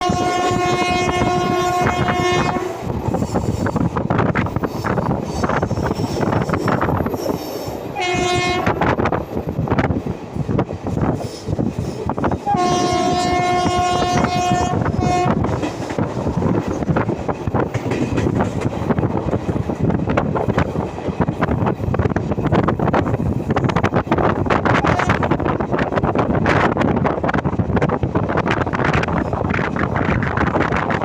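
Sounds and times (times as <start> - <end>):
locomotive horn blasts: 0.0 - 2.9, 8.0 - 8.8, 12.4 - 15.4
train wheels clattering: 2.9 - 24.7.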